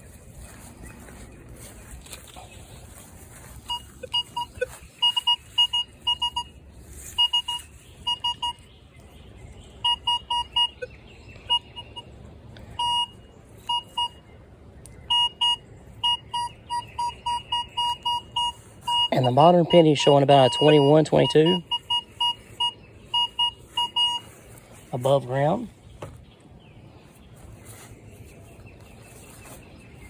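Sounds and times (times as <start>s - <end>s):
metal detector beeping: 3.4s - 8.7s, 9.8s - 14.2s, 15.1s - 25.7s.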